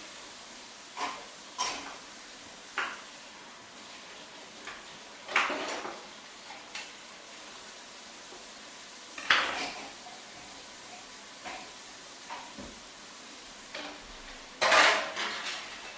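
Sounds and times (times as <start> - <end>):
kitchen utensils clinking: 4.7 - 6.9, 9.2 - 11.7, 13.7 - 15.9.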